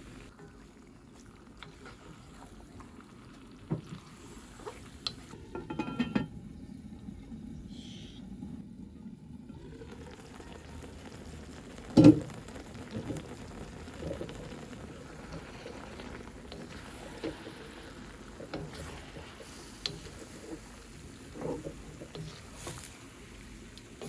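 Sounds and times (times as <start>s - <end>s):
food sizzling in a pan: 0.0s - 5.4s, 9.5s - 24.0s.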